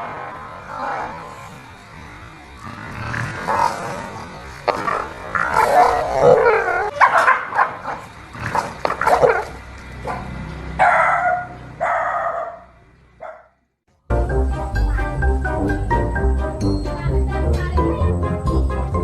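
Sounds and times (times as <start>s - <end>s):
dogs barking: 2.6s - 13.6s.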